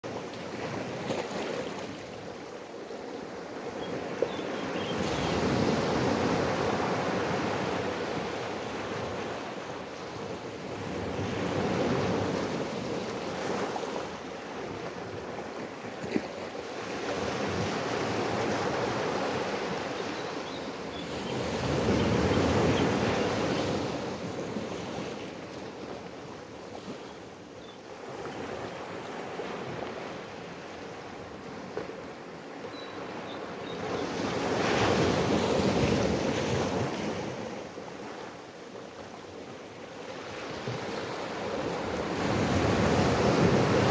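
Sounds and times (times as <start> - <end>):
ocean waves breaking: 40.1 - 43.9.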